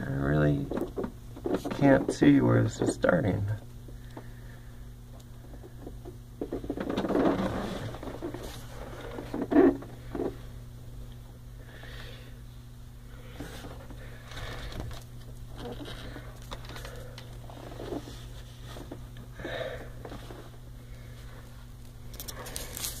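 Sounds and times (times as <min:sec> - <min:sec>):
steady low hum: 0:00.0 - 0:23.0
person breathing: 0:11.6 - 0:12.4, 0:19.3 - 0:20.2
rustling and scuffing: 0:22.4 - 0:23.0.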